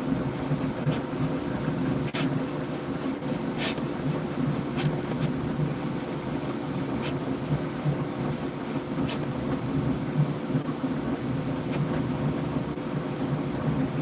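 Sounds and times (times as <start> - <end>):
printer motors and fans humming: 0.0 - 14.0.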